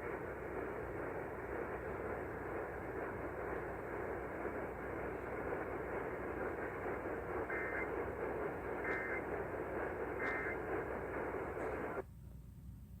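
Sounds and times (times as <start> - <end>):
radio hiss: 0.0 - 12.1
warbling data tone bursts: 5.2 - 12.0.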